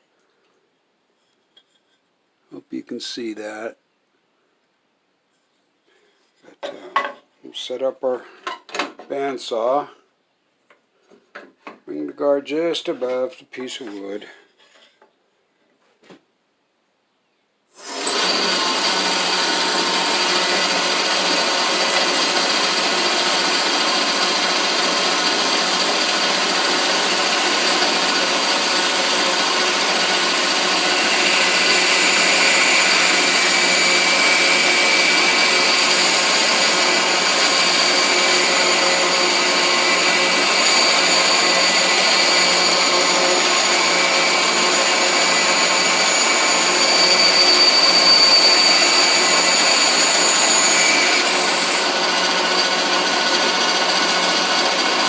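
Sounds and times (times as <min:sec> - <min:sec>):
bandsaw cutting wood: 0:17.8 - 0:55.0.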